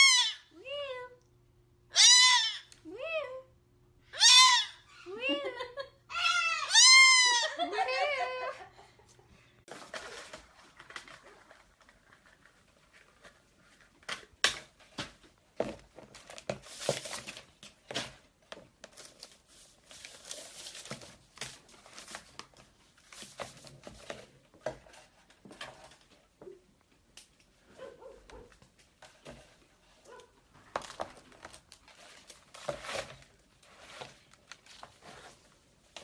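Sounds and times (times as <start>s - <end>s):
crinkling and rustling: 9.6s - 36.0s.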